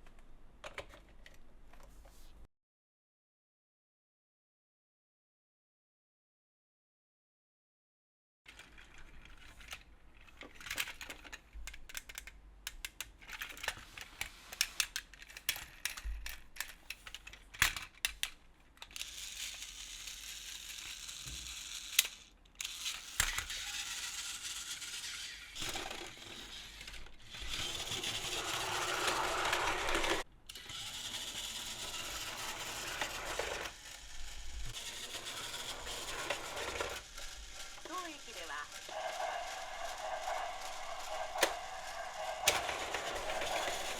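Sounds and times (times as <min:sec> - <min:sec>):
toy trains clattering on track: 0:08.5 - 0:43.9
toy train running noise: 0:14.5 - 0:43.9.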